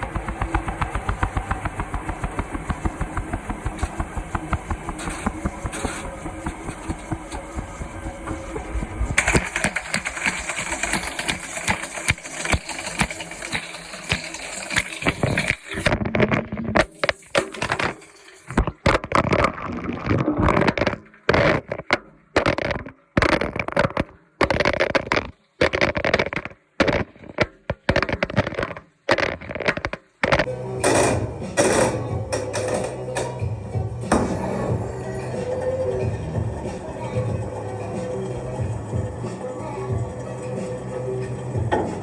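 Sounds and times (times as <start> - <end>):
phone clattering in washing machine: 0.0 - 16.0, 16.8 - 18.7, 30.9 - 33.5.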